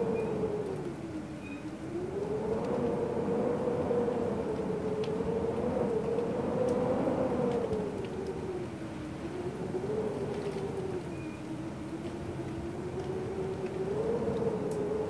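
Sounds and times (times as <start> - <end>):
light rain ticking: 0.0 - 15.0
wind whistling: 0.0 - 15.0.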